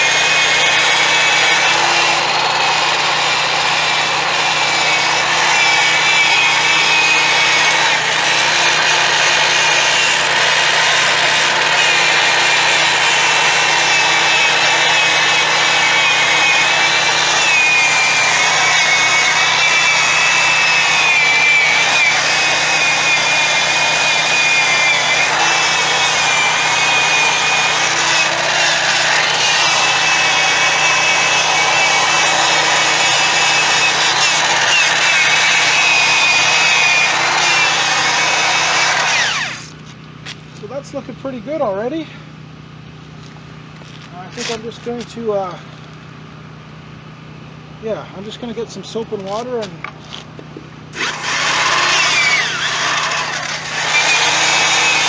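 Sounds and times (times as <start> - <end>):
electric drill polishing: 0.0 - 39.8, 51.0 - 55.0.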